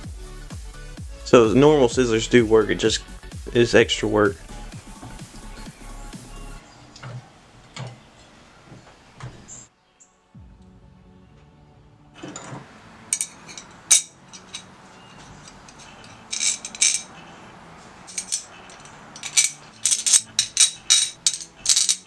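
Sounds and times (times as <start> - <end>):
metal screws clinking and rattling: 13.1 - 17.4, 18.0 - 22.0.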